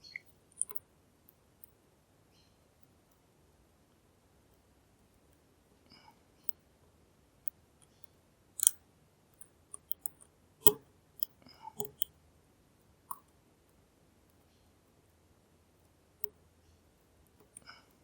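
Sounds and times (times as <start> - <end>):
lock pick metallic clicks: 0.0 - 0.8, 8.6 - 8.8, 9.4 - 12.1.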